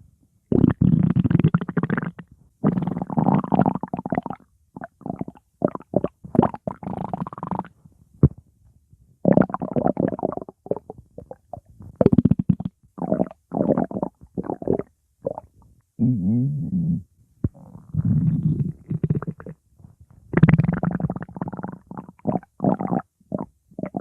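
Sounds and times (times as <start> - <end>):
stomach growling: 9.2 - 19.6, 20.3 - 24.0.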